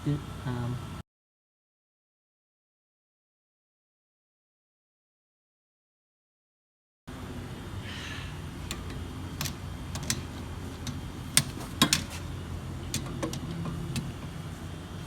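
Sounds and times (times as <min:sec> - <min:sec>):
hand tools clicking and knocking: 0:08.6 - 0:14.6.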